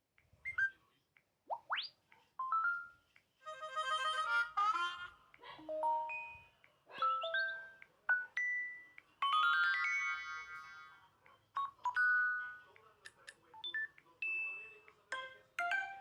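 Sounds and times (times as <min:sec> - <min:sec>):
smartphone electronic chimes: 0:05.7 - 0:06.5, 0:07.1 - 0:10.6.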